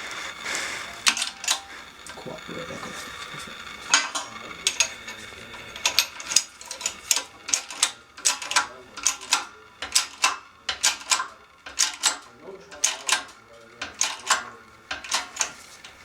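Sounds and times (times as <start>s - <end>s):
press sharp metallic clicks: 3.2s - 16.0s.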